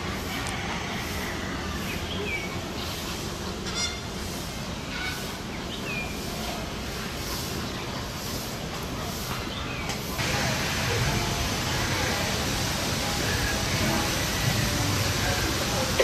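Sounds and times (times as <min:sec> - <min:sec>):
steady background noise: 0:00.0 - 0:16.0
bird honking call: 0:03.6 - 0:04.1.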